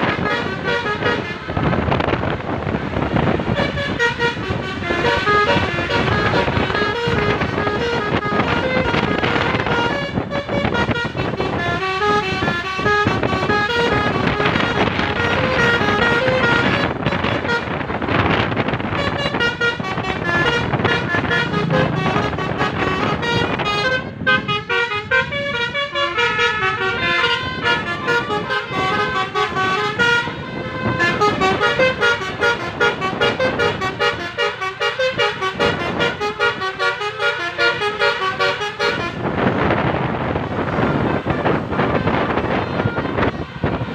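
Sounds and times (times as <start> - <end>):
vehicle driving: 0.0 - 43.9
vehicle horns playing tunes: 0.0 - 43.9.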